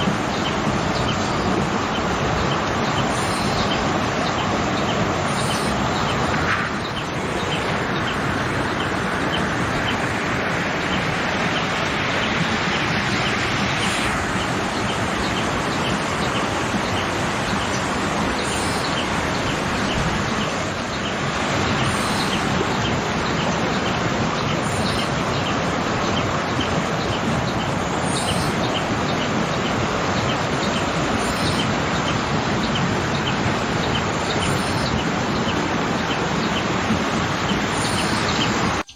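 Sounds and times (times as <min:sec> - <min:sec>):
waterfall rushing: 0:00.0 - 0:38.9
bird chirping: 0:00.4 - 0:10.1, 0:32.7 - 0:35.5, 0:37.7 - 0:38.9.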